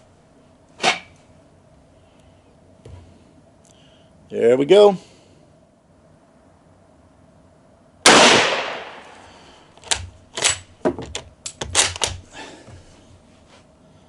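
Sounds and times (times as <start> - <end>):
rifle shot: 8.0 - 9.2
rifle bolt metal clacks: 9.8 - 12.2.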